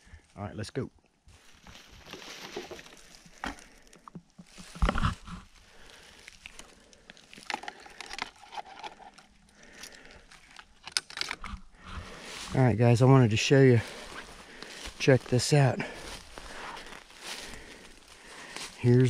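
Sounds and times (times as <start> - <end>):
footsteps through brush: 1.3 - 8.0, 11.4 - 19.0
twigs snapping: 5.8 - 12.5, 13.9 - 15.0.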